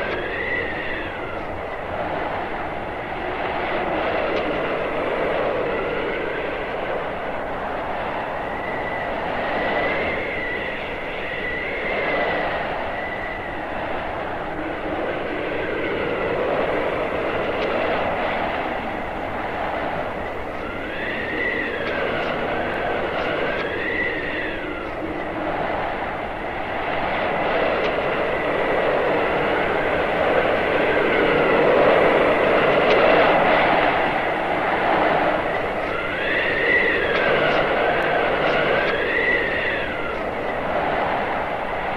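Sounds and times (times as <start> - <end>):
faint high whistle: 0.0 - 1.5, 8.4 - 13.7, 20.2 - 25.4, 35.8 - 40.6
blizzard wind howling: 0.0 - 41.9.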